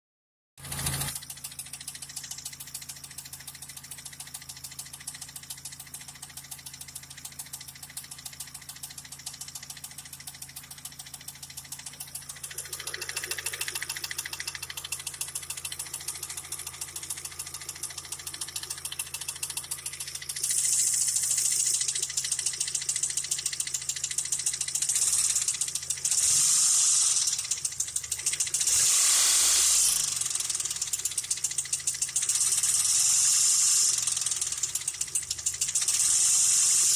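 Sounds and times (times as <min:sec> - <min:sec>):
car engine knocking: 0:00.6 - 0:36.9
engine revving: 0:00.6 - 0:36.9.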